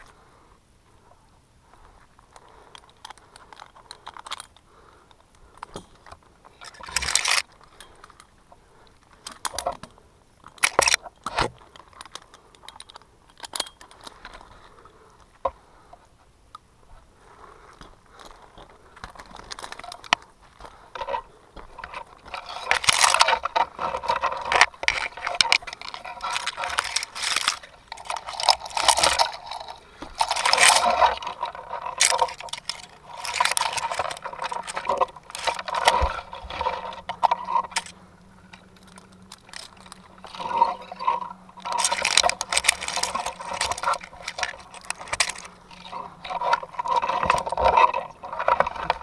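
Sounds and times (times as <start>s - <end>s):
clinks scrapes and crunches: 2.3s - 4.6s, 5.6s - 8.3s, 9.1s - 14.8s, 18.1s - 49.0s
handling noise: 17.8s - 49.0s.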